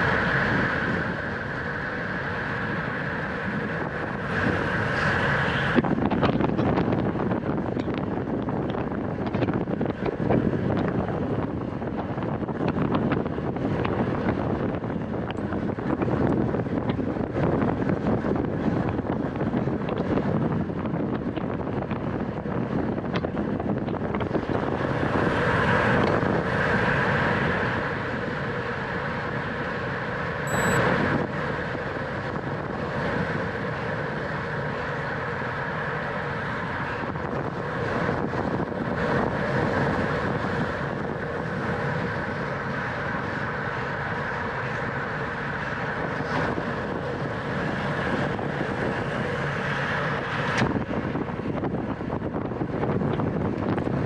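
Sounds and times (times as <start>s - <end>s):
wind rushing over microphone: 0.0s - 54.0s
bicycle rolling noise: 5.7s - 30.5s, 31.2s - 54.0s
steady buzzing: 30.5s - 31.0s.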